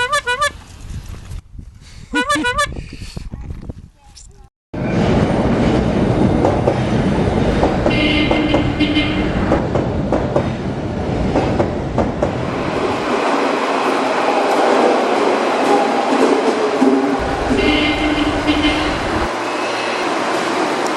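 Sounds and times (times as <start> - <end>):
train rumble: 4.8 - 20.9
train wheels clicking on rails: 5.0 - 19.4.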